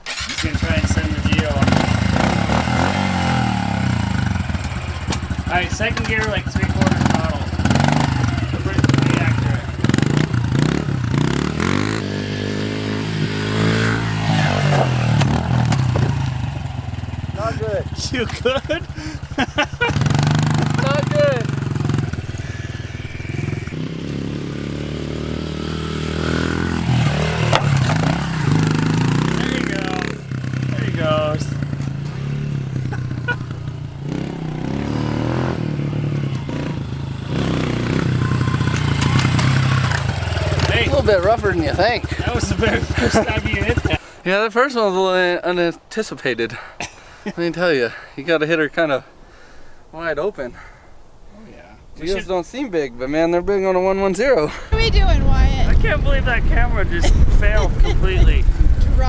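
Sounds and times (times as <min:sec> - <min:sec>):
small engine revving: 0:00.0 - 0:44.0.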